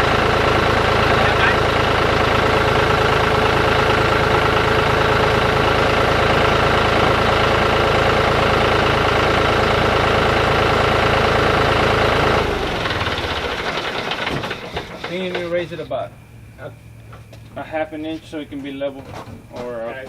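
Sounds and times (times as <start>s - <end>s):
tractor engine idling: 0.0s - 19.0s
tractor engine shutting off: 0.0s - 19.0s.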